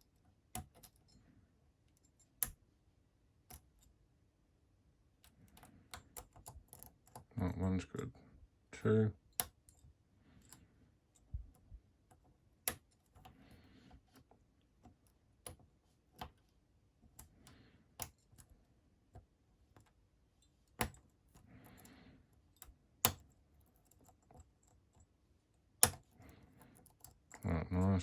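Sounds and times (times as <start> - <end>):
lock pick clicking in padlock: 25.8 - 26.1.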